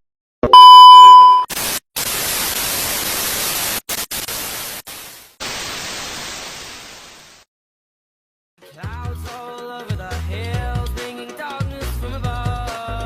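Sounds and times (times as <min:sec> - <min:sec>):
loud steady beep tone: 0:00.5 - 0:01.5.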